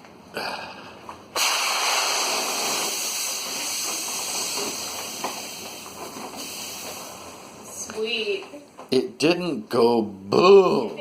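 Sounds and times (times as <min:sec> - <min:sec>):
loud hiss of escaping gas: 0:01.3 - 0:07.6.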